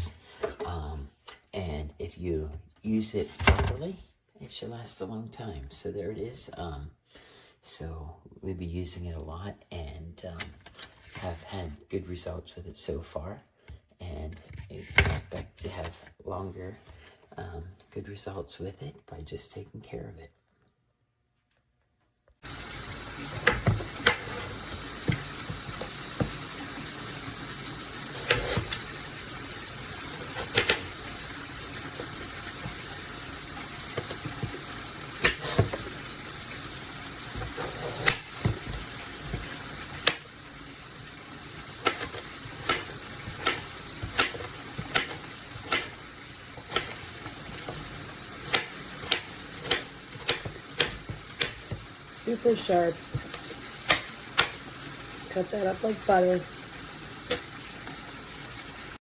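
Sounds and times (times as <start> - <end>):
steady hiss: 22.4 - 59.0
knife cutting on cutting board: 23.2 - 26.5, 28.1 - 28.9, 30.0 - 31.2, 35.2 - 35.9, 37.4 - 40.2, 41.8 - 46.0, 46.6 - 51.9.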